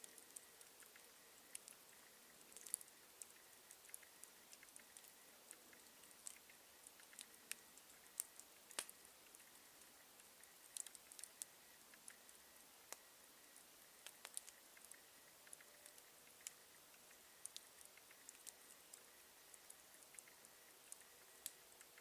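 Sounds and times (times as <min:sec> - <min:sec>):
campfire crackling: 0:00.0 - 0:22.0.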